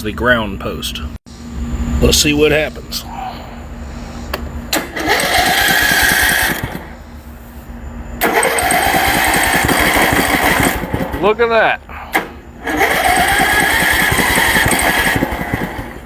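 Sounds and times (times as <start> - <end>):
electric starter cranking engine: 4.7 - 7.0, 8.2 - 16.0.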